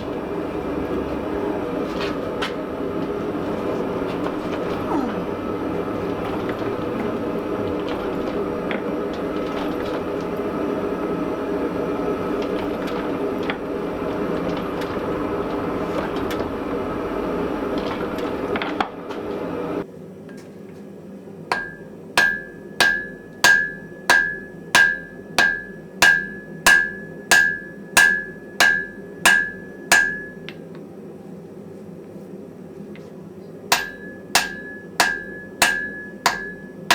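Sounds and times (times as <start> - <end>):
gas forge burner rushing: 0.0 - 19.9
hammer striking iron on anvil: 21.5 - 30.5, 33.7 - 36.9.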